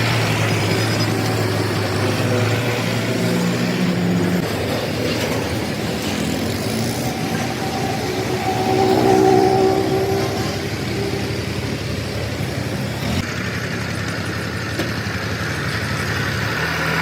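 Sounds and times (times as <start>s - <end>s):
metalworking machine humming: 0.0s - 13.2s.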